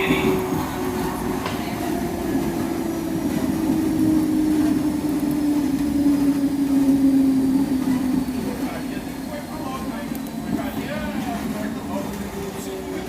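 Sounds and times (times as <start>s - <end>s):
train running rumble: 0.0s - 13.0s
train traction motor whine: 0.0s - 13.0s.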